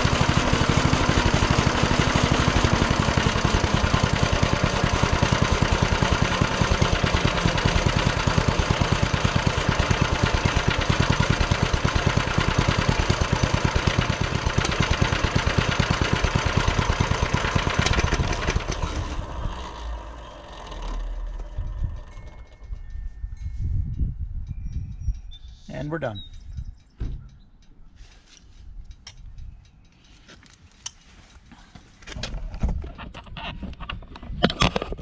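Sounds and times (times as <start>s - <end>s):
small engine running: 0.0s - 23.1s.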